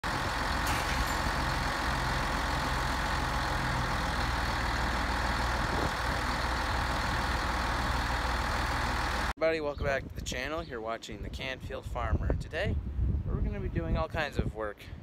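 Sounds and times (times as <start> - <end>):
engine idling: 0.0 - 9.3.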